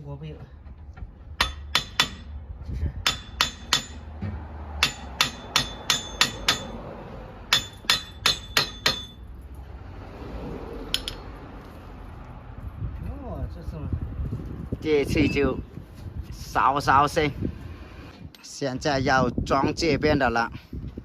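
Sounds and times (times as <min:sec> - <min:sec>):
hammer striking metal: 0:01.4 - 0:02.4, 0:03.0 - 0:06.8, 0:07.5 - 0:09.2, 0:10.9 - 0:11.3.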